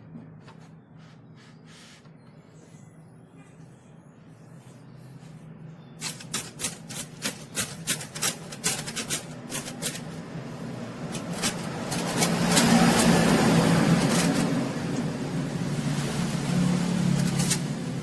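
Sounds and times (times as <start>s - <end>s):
typewriter clicking: 6.0s - 10.2s, 11.1s - 15.2s, 16.0s - 18.0s.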